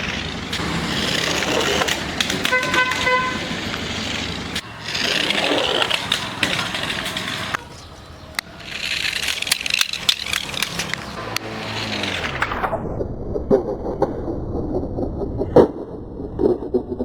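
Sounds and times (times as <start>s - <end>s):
short horn toots: 2.4s - 3.5s.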